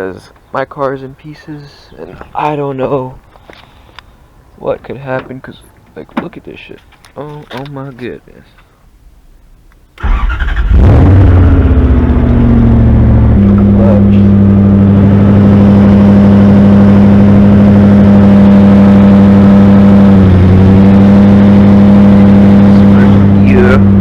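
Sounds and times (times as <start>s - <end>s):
car engine starting and idling: 9.9s - 24.0s.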